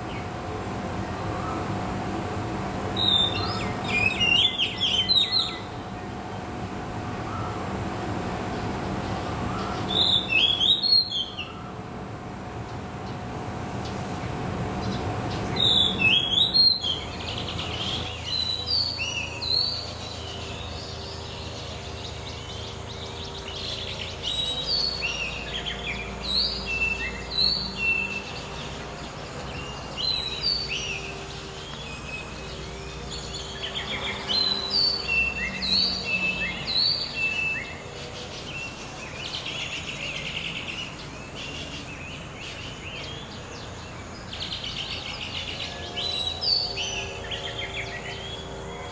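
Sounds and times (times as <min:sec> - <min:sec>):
steady low hum: 0:00.0 - 0:48.9
bird singing whistled phrases: 0:03.0 - 0:05.7, 0:09.5 - 0:11.6.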